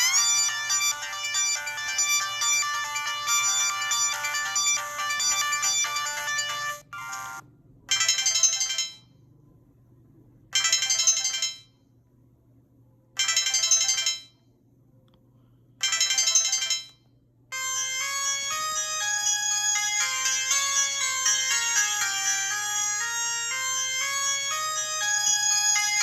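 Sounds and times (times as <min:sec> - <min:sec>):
melodic phone ringtone: 0:00.0 - 0:07.4, 0:17.5 - 0:26.0
short phone ring pattern: 0:00.0 - 0:09.0.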